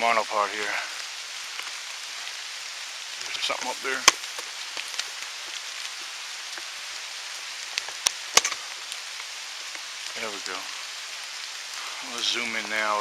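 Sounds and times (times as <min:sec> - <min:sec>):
rain hissing on woods: 0:00.0 - 0:13.0
sharp clicks near microphone: 0:07.8 - 0:08.6.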